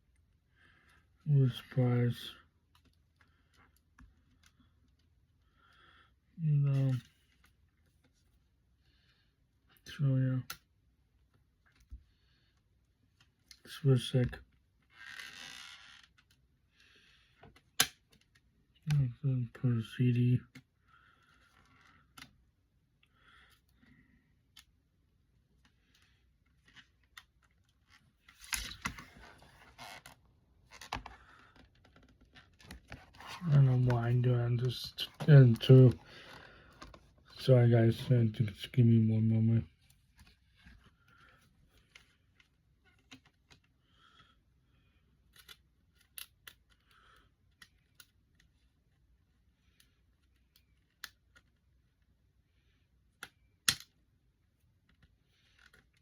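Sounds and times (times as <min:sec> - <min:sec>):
small clicks of cd case: 0:25.6 - 0:34.0, 0:35.2 - 0:37.2.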